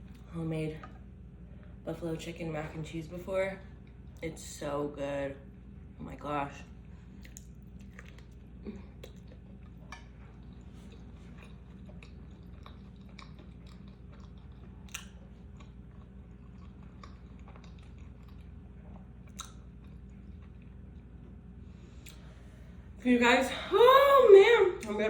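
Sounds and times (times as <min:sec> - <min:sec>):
faint low hum: 0:00.0 - 0:25.0
person chewing food: 0:07.0 - 0:22.5.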